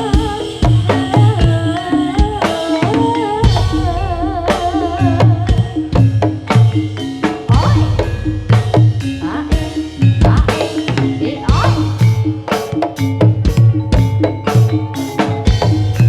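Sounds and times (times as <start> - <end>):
melody with vibrato: 0.0 - 16.0
stepping bass line: 7.5 - 10.5.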